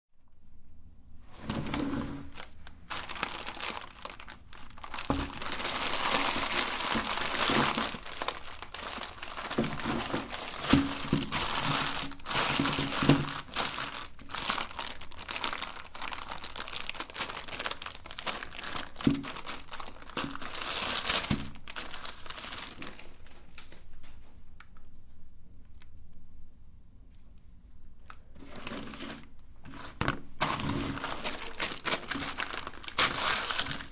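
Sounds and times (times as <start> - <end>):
plastic wrappers crinkling: 1.3 - 24.9, 28.1 - 33.9.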